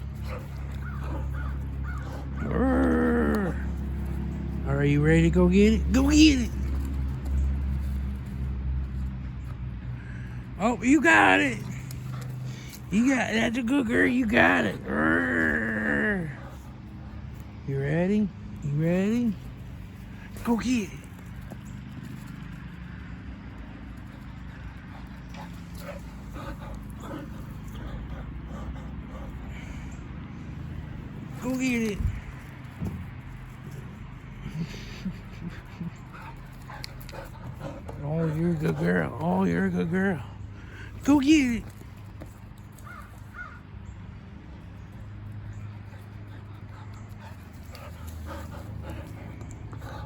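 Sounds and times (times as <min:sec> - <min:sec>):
low outdoor hum: 0:00.0 - 0:50.0
dog breathing: 0:11.6 - 0:13.0, 0:23.7 - 0:31.4, 0:32.0 - 0:41.0, 0:45.6 - 0:50.0.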